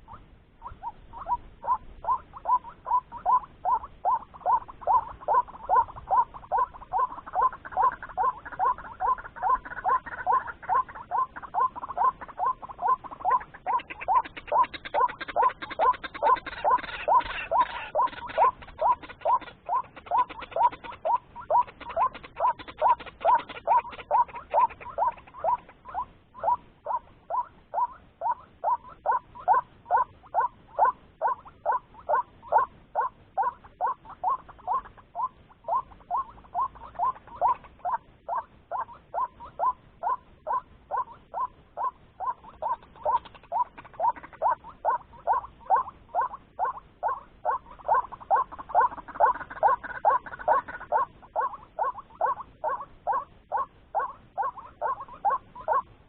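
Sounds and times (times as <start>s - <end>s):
bird croaking call: 0.0s - 55.9s.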